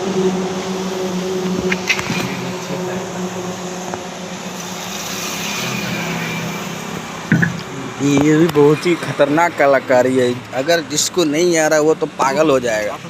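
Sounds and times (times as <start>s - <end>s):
vehicle noise: 0.5s - 10.9s.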